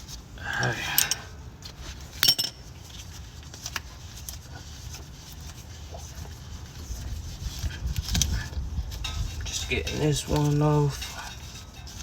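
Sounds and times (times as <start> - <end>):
metal tool clinking on metal: 1.0 - 1.3, 2.2 - 2.7.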